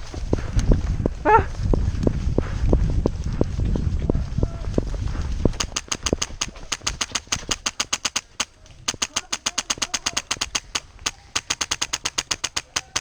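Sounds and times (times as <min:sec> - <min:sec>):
running footsteps: 0:00.0 - 0:13.0
airsoft guns firing: 0:05.5 - 0:13.0.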